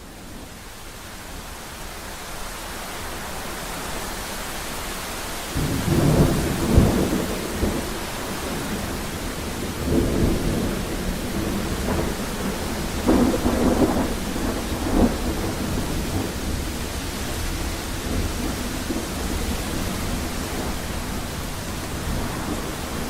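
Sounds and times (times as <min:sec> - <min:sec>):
steady rain hiss: 0:00.0 - 0:23.0
thunder rumbling: 0:05.6 - 0:23.0.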